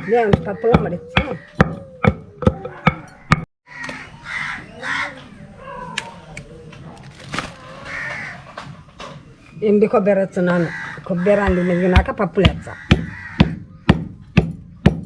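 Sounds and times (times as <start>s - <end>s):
pounding in a mortar: 0.0s - 3.5s, 11.3s - 15.0s
crow cawing: 2.9s - 6.2s, 7.6s - 8.5s, 10.6s - 13.9s.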